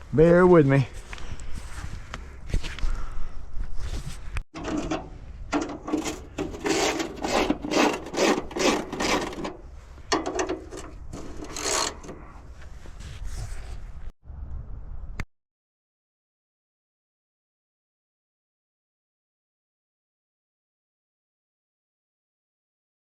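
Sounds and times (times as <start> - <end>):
hand tools scraping metal: 4.5 - 12.4.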